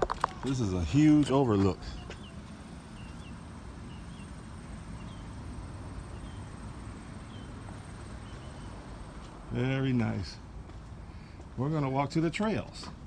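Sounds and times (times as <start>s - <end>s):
bird chirping: 0.0s - 10.4s.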